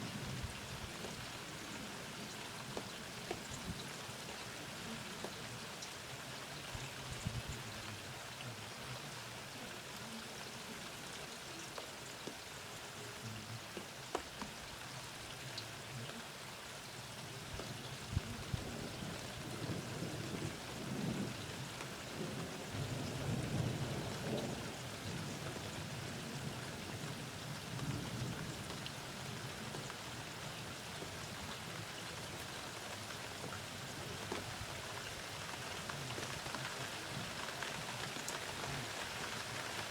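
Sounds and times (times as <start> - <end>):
steady rain falling: 0.0 - 39.9
low roll of thunder: 18.1 - 28.8.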